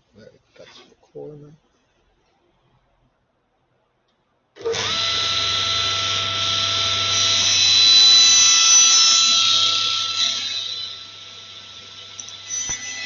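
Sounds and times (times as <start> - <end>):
table saw whining: 4.6 - 13.0
saw blade cutting wood: 11.8 - 13.0.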